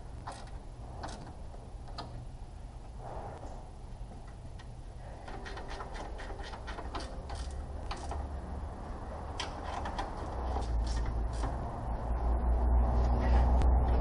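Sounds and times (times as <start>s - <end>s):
low rumble: 0.0s - 5.3s, 10.2s - 14.0s.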